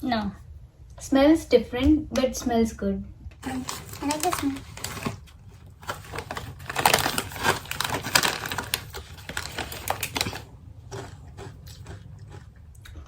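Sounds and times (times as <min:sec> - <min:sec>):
potato chips crunching: 0:03.4 - 0:13.0.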